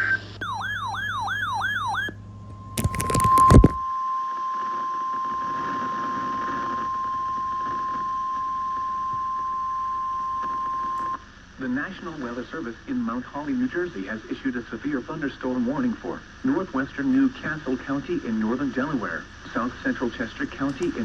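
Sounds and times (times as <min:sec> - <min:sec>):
steady warning alarm tone: 0:00.4 - 0:02.1
warbling electronic tone: 0:02.7 - 0:03.8.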